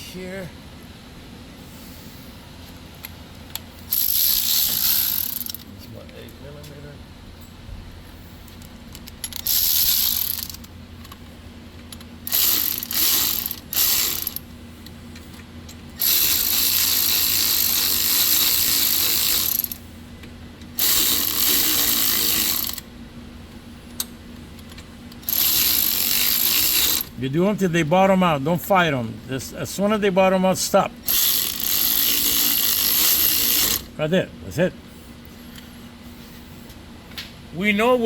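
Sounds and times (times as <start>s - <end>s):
hand ratchet clicking: 3.5s - 5.7s, 8.9s - 11.2s, 11.9s - 14.4s, 16.0s - 19.8s, 20.8s - 22.8s, 24.6s - 27.1s, 31.0s - 33.9s.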